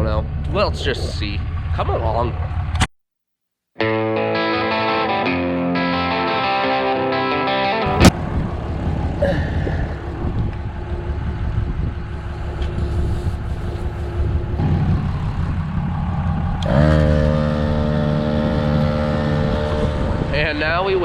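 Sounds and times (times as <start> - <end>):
engine low rumble: 0.0 - 2.9, 7.9 - 21.0
second motor pitch rising: 13.8 - 20.3.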